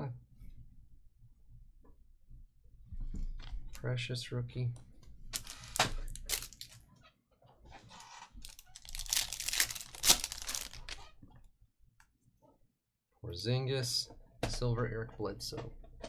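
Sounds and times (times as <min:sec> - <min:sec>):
foil wrapper tearing and crinkling: 0:05.4 - 0:06.8, 0:08.4 - 0:11.1.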